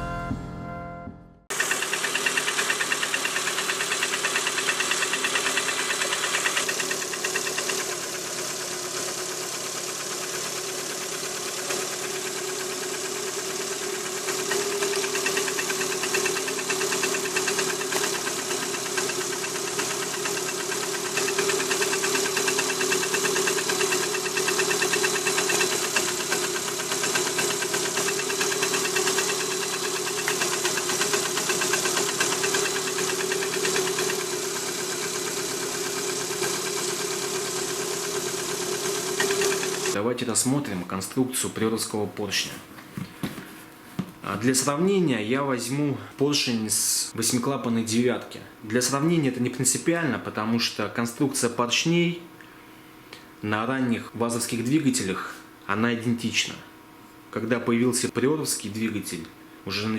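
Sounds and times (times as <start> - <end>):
engine knocking: 1.5 - 40.0.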